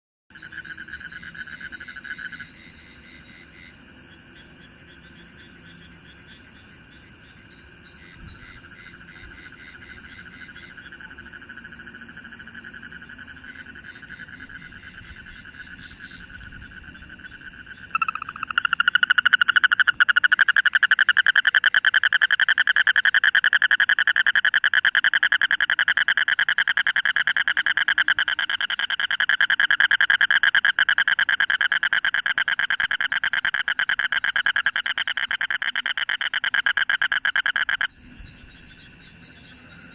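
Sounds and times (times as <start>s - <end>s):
toad trilling: 8.4s - 37.9s.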